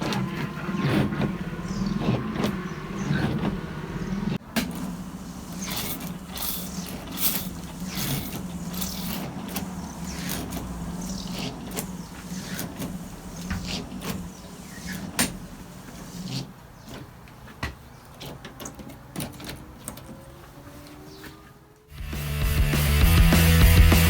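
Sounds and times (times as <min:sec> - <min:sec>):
gear clicks and knocks: 0:00.0 - 0:21.3
wiper motor humming: 0:00.0 - 0:24.0.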